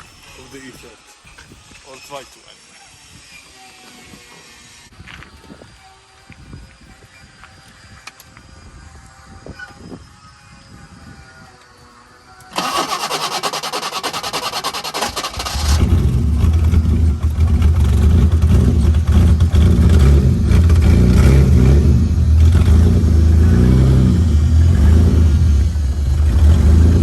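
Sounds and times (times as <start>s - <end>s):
starter motor cranking: 12.5s - 20.0s
car engine running: 12.6s - 27.0s.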